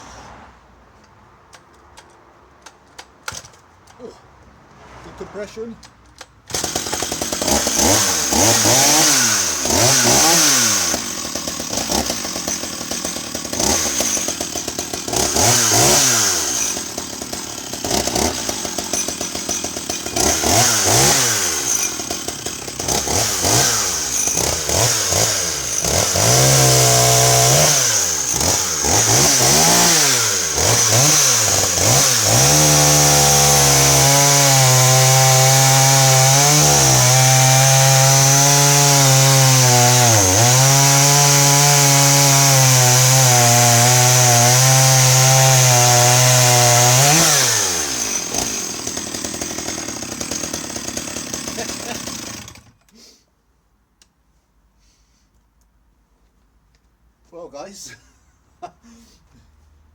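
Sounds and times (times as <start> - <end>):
chainsaw revving: 6.5 - 52.8.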